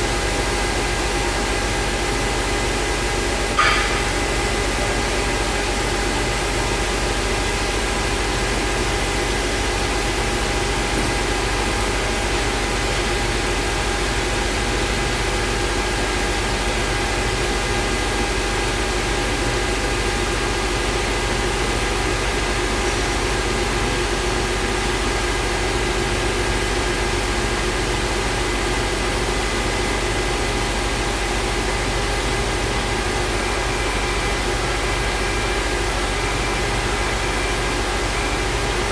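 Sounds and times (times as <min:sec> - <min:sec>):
cnc router running: 0:00.0 - 0:38.9.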